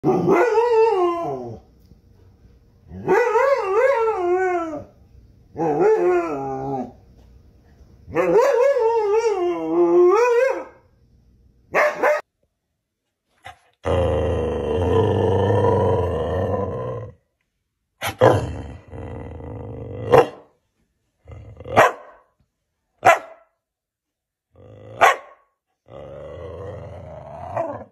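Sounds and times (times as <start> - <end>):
dog howl-barking: 0.0 - 1.6, 3.0 - 4.9, 5.6 - 7.0, 8.1 - 10.8.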